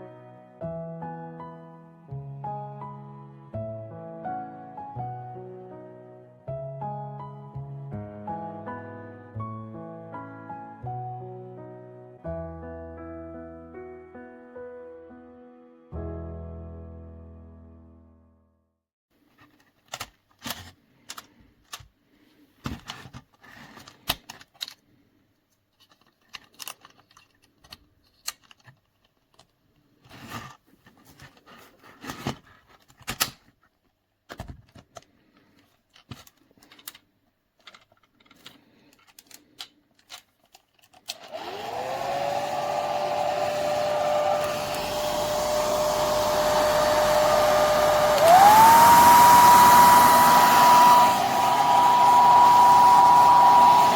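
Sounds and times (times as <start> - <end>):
hair dryer running: 41.2 - 53.9.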